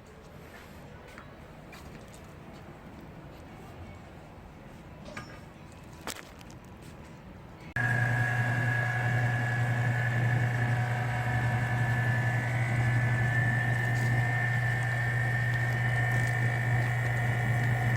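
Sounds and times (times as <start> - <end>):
machine humming with high whine: 7.8 - 17.9.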